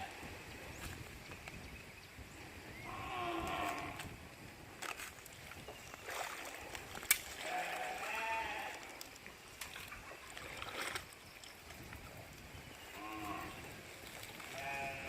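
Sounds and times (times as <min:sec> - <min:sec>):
farm animal cry: 0:02.8 - 0:04.0, 0:07.4 - 0:08.8, 0:14.5 - 0:15.0.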